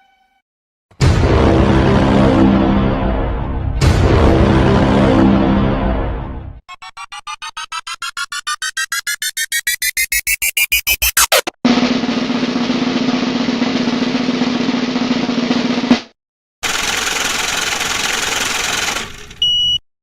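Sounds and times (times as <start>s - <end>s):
rising beat riser with sweep: 1.0s - 13.4s.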